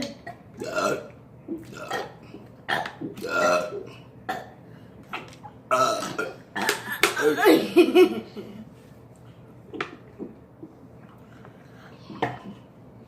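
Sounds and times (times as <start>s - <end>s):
person burping: 0.0s - 4.6s, 5.7s - 7.7s.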